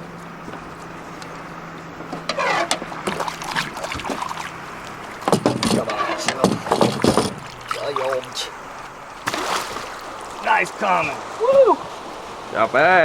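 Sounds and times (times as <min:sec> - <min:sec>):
boat motor humming: 0:00.0 - 0:13.0
knocks and clatter on deck: 0:05.2 - 0:07.6.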